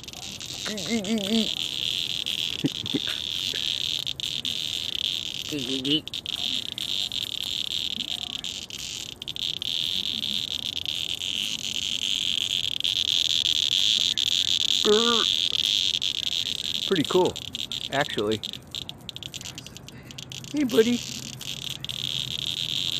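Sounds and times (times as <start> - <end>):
cicada buzzing: 0.0 - 22.9.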